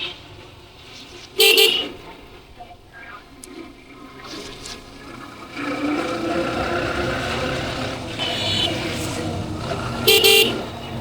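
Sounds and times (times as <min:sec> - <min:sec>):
vehicle horn honking: 0:01.4 - 0:02.0, 0:10.0 - 0:10.8
motorcycle engine: 0:04.6 - 0:11.0.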